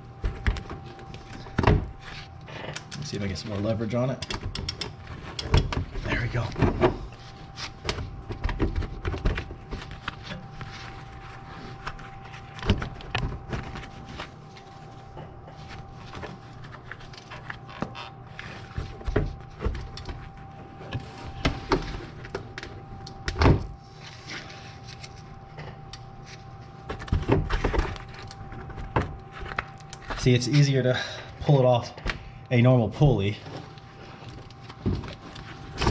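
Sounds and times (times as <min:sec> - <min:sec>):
faint steady hum: 0:00.0 - 0:35.9.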